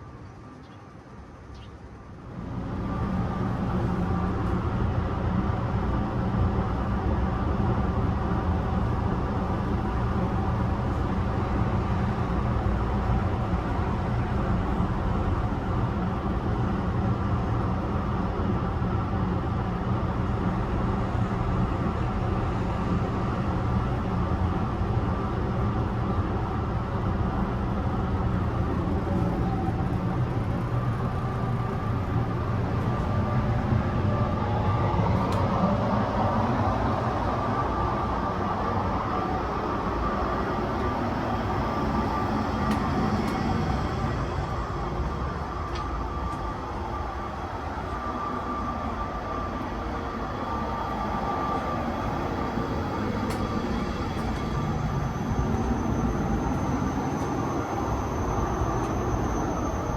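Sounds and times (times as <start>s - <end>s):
electric train motor hum: 2.3s - 59.9s
train wheels running: 28.0s - 59.9s.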